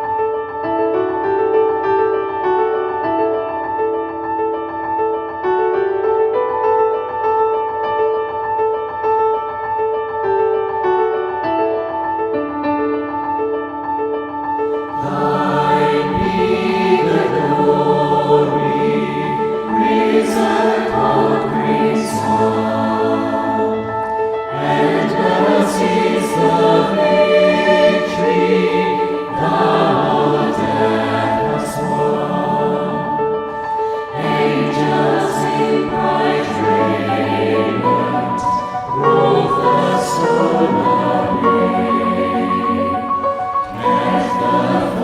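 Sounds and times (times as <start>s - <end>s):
choir singing a hymn: 14.8s - 45.0s.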